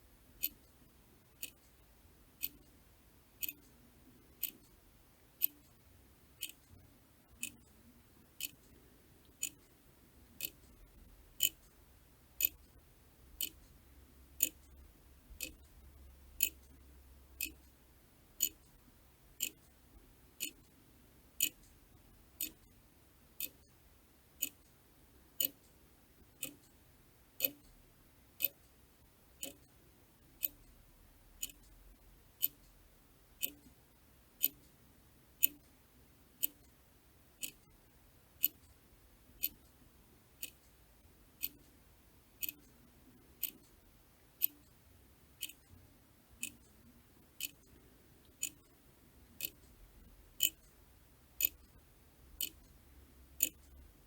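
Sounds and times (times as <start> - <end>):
clock ticking: 0.4 - 0.8, 1.4 - 1.7, 2.4 - 2.7, 3.4 - 4.8, 5.4 - 5.8, 6.4 - 7.7, 8.4 - 9.7, 10.3 - 11.8, 12.4 - 12.8, 13.4 - 13.8, 14.4 - 15.8, 16.4 - 16.8, 17.4 - 17.8, 18.4 - 18.8, 19.4 - 19.7, 20.4 - 20.8, 21.4 - 21.8, 22.4 - 22.8, 23.4 - 23.8, 24.4 - 24.7, 25.4 - 26.8, 27.4 - 27.8, 28.4 - 28.8, 29.4 - 29.8, 30.4 - 30.8, 31.4 - 31.8, 32.4 - 32.8, 33.4 - 33.8, 34.4 - 34.8, 35.4 - 35.8, 36.4 - 36.8, 37.4 - 37.8, 38.4 - 38.8, 39.4 - 39.8, 40.4 - 40.8, 41.4 - 41.7, 42.4 - 42.8, 43.4 - 43.8, 44.4 - 44.8, 45.4 - 45.8, 46.4 - 46.8, 47.4 - 50.8, 51.4 - 51.8, 52.4 - 53.9.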